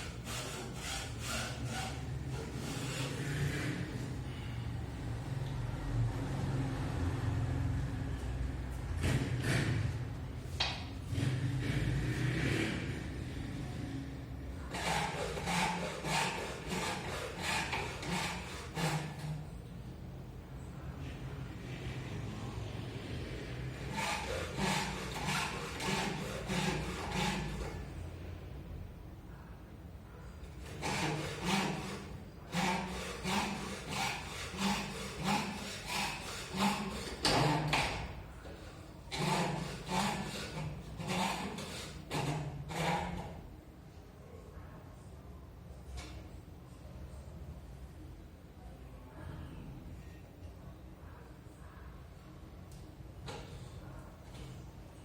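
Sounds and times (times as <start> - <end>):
scraping strokes on wood: 0.0 - 4.5, 14.6 - 19.5, 23.7 - 27.9, 30.6 - 43.4
short scraping strokes: 0.0 - 4.5, 23.7 - 27.8.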